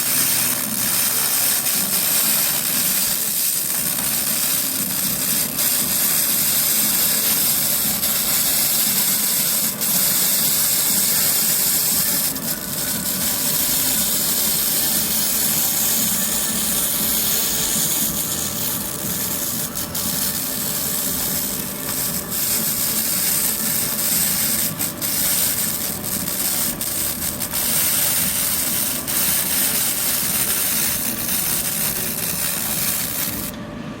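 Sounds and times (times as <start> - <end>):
laser cleaner hissing crackle: 0.0 - 33.6.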